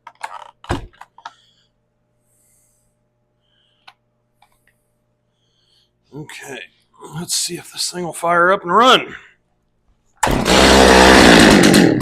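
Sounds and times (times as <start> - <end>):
chainsaw recoil starter pull: 10.2 - 12.0.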